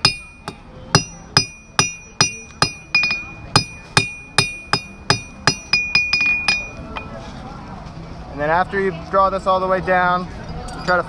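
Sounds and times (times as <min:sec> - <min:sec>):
hammer striking iron on anvil: 0:00.0 - 0:07.1.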